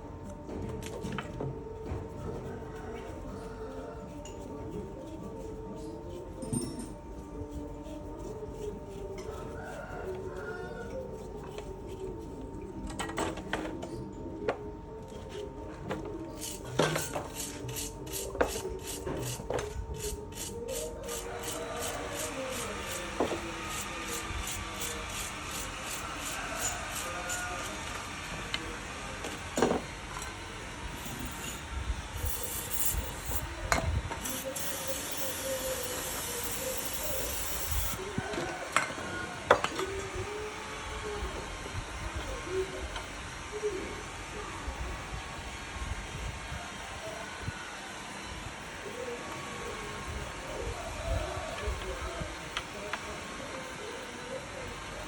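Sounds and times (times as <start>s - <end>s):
back-and-forth rubbing: 2.0s - 12.6s, 16.3s - 28.3s, 30.9s - 33.5s, 34.1s - 38.0s
metal parts clinking and knocking: 31.0s - 33.5s, 34.2s - 38.0s
spray hissing: 34.2s - 38.0s.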